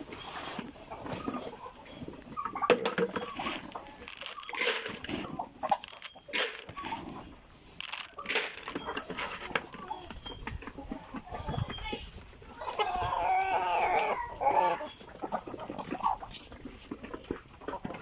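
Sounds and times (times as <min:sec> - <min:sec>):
crunching and rustling: 0:00.0 - 0:18.0
faint animal sounds: 0:08.7 - 0:18.0.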